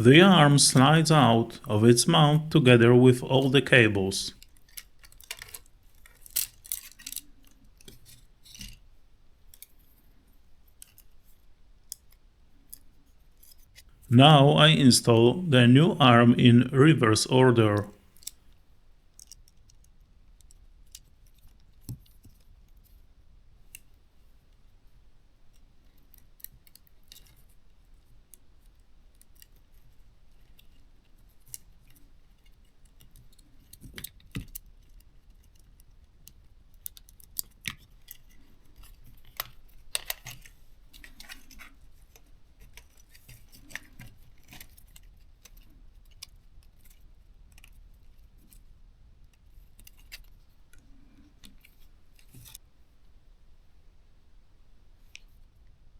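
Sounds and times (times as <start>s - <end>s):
clicks of small plastic parts: 4.4s - 8.7s, 36.3s - 47.8s.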